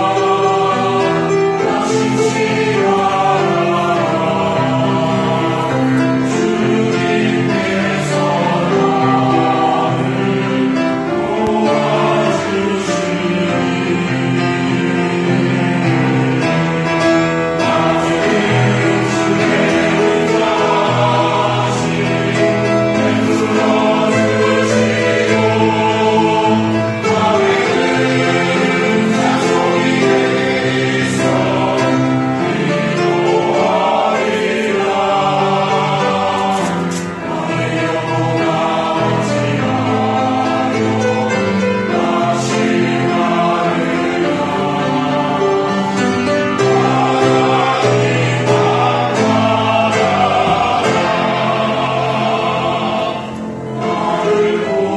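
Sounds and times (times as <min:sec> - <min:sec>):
choir singing: 0:00.0 - 0:54.9.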